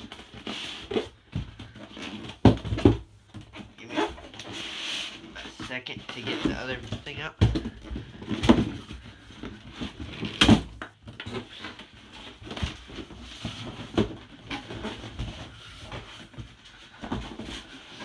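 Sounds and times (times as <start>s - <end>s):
styrofoam rubbing and creaking: 0.0s - 2.7s, 3.4s - 7.4s, 11.2s - 18.0s
knocks and thumps: 0.9s - 4.6s, 5.3s - 17.6s.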